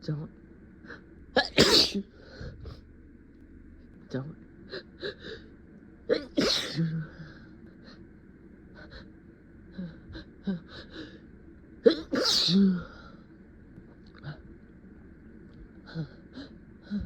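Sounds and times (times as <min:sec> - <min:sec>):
person sneezing: 0:01.4 - 0:02.0, 0:06.1 - 0:07.1, 0:11.9 - 0:13.0.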